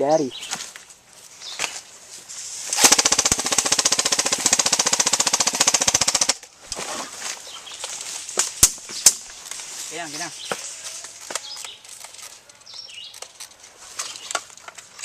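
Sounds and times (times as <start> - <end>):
airsoft rifle full-auto burst: 2.8 - 6.4.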